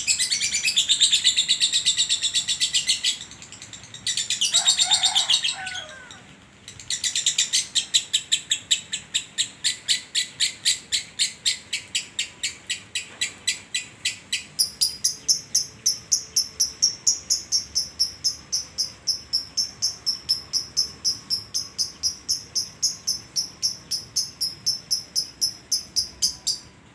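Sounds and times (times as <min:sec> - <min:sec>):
lovebird chattering: 0:06.7 - 0:26.7.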